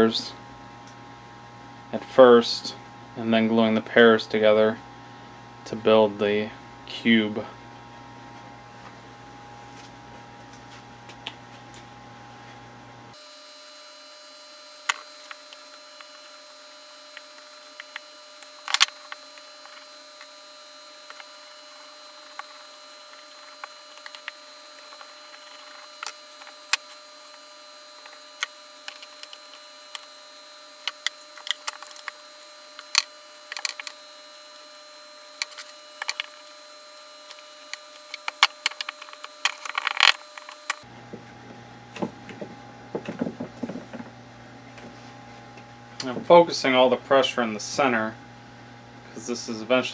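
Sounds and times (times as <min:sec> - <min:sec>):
faint electrical hum: 0:09.7 - 0:40.9
wood blocks and tools clicking: 0:13.4 - 0:40.8.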